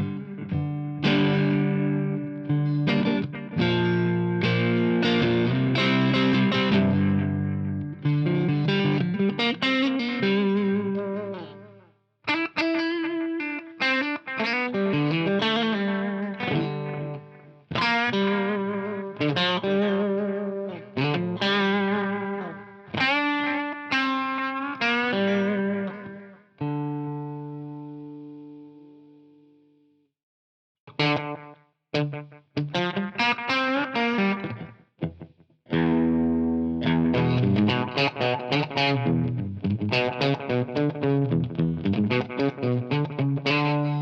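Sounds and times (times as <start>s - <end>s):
electric guitar with delay: 0.0s - 29.6s, 30.9s - 44.0s.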